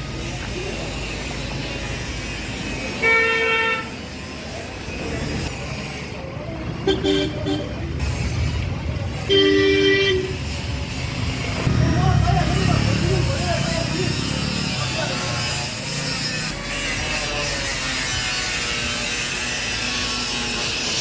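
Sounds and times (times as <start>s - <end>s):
traffic rumble: 0.0s - 21.0s
vehicle horns honking: 3.0s - 4.0s, 6.8s - 7.8s, 9.2s - 10.5s.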